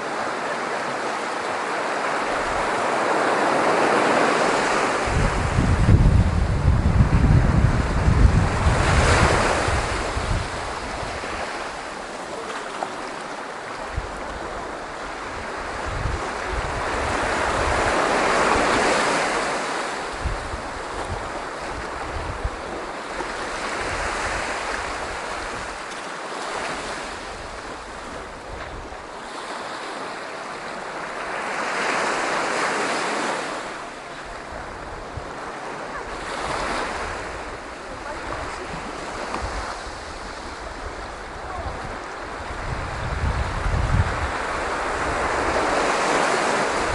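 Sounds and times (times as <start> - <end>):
sea waves breaking: 0.0 - 46.9
wind buffeting microphone: 2.2 - 12.3, 13.1 - 26.0, 34.1 - 46.9.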